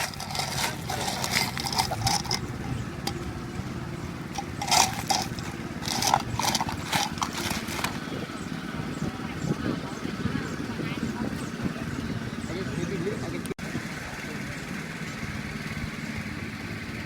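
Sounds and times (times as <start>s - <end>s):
short clatters and knocks: 0.0s - 3.2s, 4.3s - 8.1s.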